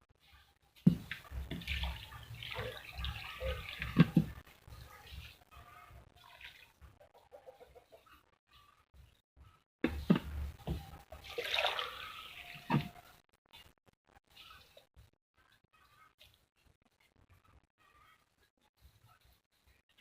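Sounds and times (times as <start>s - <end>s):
water pouring and splashing: 0.8s - 5.5s, 6.2s - 6.8s, 10.0s - 13.1s.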